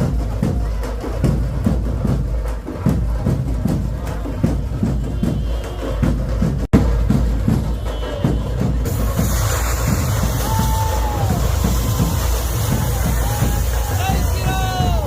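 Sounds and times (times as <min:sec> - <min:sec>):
music with drum beat: 0:00.0 - 0:15.0
hiss: 0:08.9 - 0:15.0.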